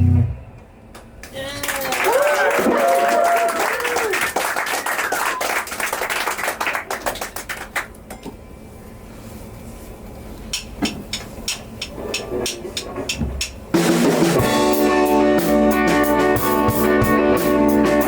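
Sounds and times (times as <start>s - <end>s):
audience clapping: 1.0s - 8.1s.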